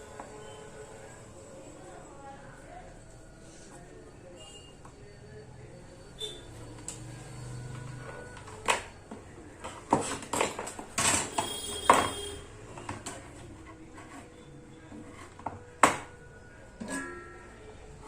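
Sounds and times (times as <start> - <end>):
hard objects knocking and clattering: 8.4 - 14.3, 14.9 - 17.1.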